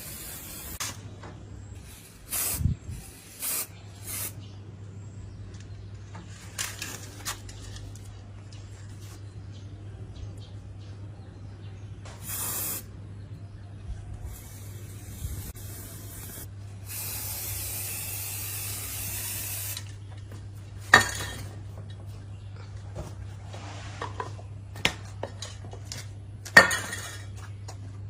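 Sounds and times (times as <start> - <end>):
spray nozzle hissing: 0.0 - 0.8, 12.2 - 12.8, 14.3 - 19.8
steady low hum: 0.0 - 28.0.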